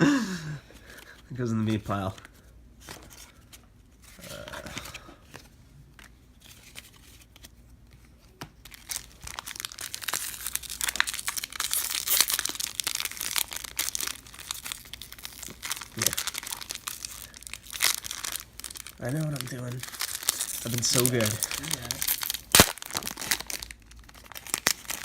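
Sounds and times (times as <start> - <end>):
wrapper tearing and crinkling: 8.6 - 25.0.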